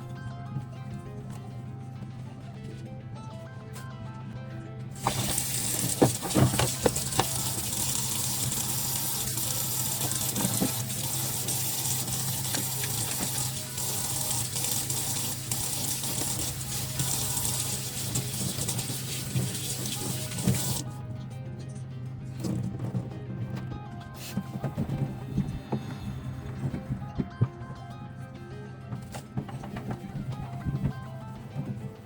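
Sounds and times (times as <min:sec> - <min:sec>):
tap water running into sink: 0:05.0 - 0:20.8.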